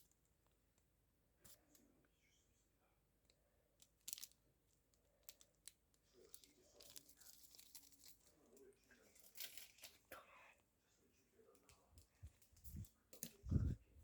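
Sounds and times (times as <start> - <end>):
packaging crinkling and tearing: 3.8 - 4.4, 5.2 - 8.3.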